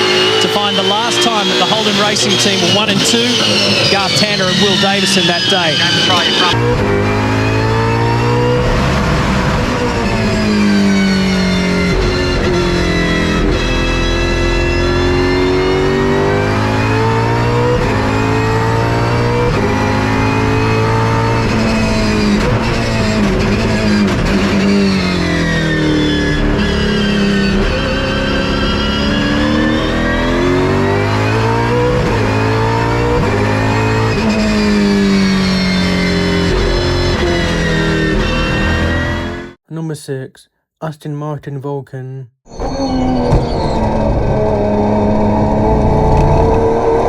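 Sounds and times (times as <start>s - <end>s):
racing engine revving: 0.0s - 39.6s, 43.2s - 47.0s
high-pitched gear whine: 0.2s - 6.6s.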